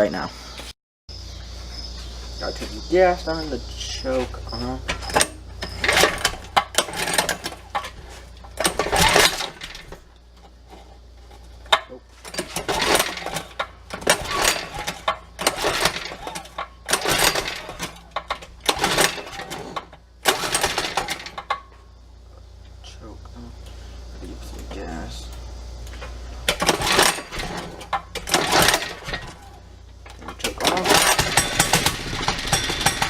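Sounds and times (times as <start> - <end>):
small engine turning over: 4.6 - 21.7, 26.4 - 33.0
recoil starter cord pulls: 4.9 - 10.5, 11.6 - 21.6, 26.5 - 33.0.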